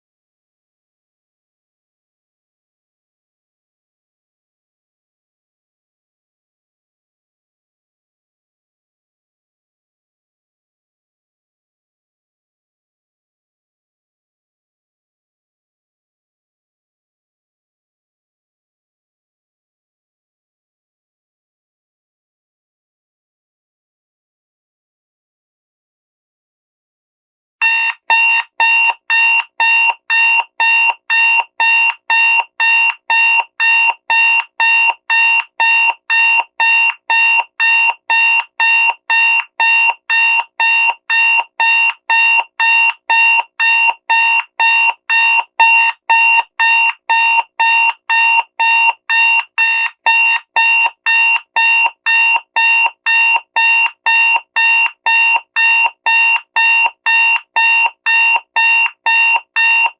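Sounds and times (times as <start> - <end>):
digital alarm clock beeping: 27.6 - 59.9.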